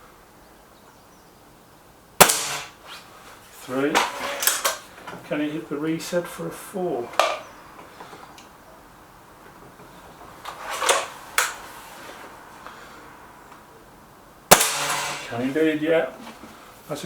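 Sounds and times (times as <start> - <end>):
muffled air rifle shot: 2.2 - 2.8, 14.5 - 15.3
pellet hitting metal target: 2.2 - 2.8, 14.5 - 15.4.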